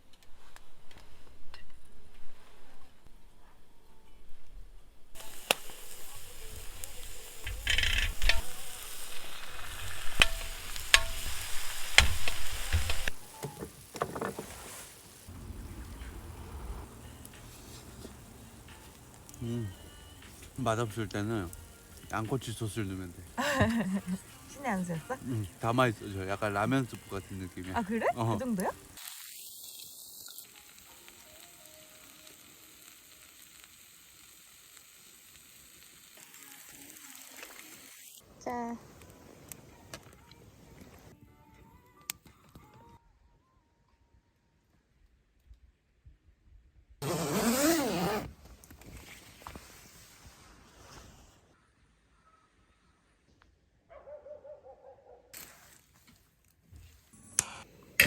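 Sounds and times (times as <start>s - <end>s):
food sizzling in a pan: 5.2s - 41.1s
utensil clacking against pan: 9.6s - 13.1s.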